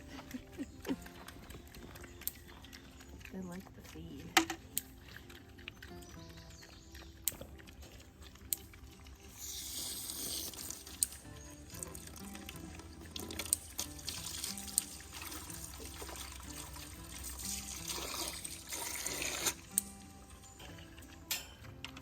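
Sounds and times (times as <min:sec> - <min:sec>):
water running and splashing: 0:00.0 - 0:21.3
soft background music: 0:00.0 - 0:22.0
sharp clicks: 0:00.4 - 0:09.0.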